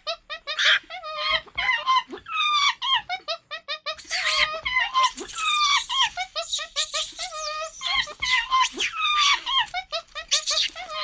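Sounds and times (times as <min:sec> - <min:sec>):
high-pitched animal calls: 0:00.4 - 0:01.4, 0:03.9 - 0:11.0.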